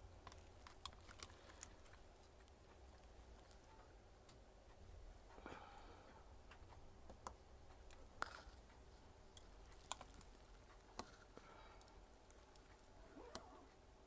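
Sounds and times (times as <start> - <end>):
small sharp clicks and taps: 6.5 - 13.5.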